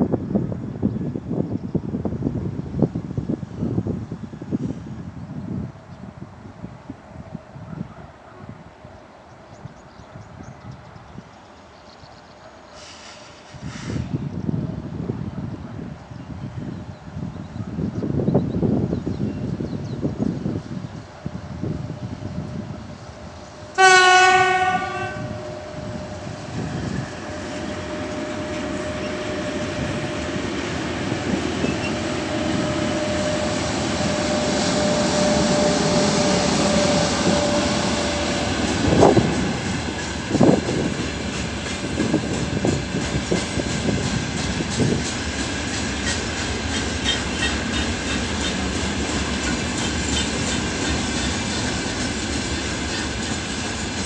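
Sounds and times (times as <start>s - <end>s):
freight train rumbling past: 0.0s - 54.0s
locomotive horn blast: 23.7s - 30.4s, 31.6s - 39.6s
train wheels clacking over rail joints: 38.6s - 54.0s.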